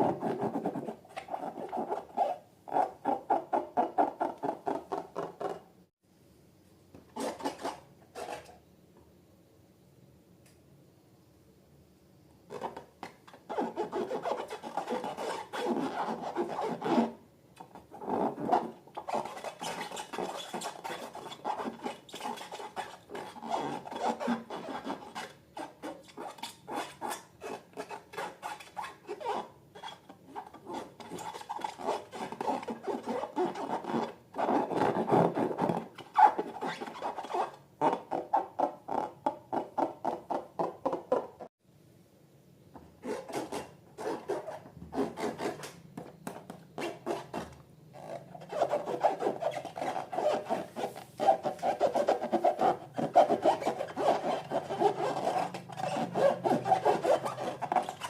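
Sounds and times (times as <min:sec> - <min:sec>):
slime and balloons rubbing crackly: 0:46.8 - 0:58.0.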